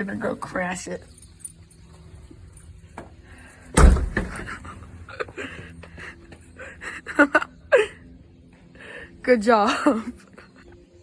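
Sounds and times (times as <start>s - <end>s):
loud thump: 3.8s - 4.6s.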